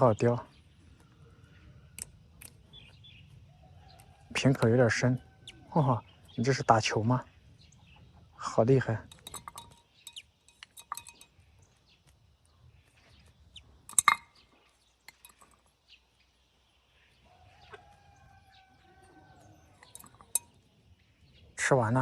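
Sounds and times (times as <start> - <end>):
distant rooster crowing: 3.4 - 6.2, 17.2 - 20.2.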